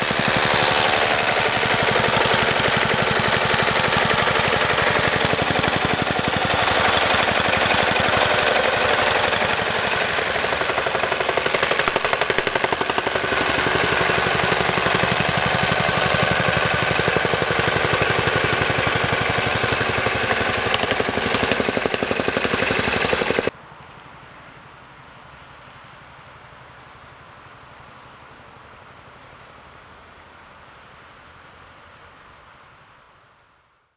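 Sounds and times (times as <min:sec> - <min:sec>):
plate compactor pounding: 0:00.0 - 0:23.5.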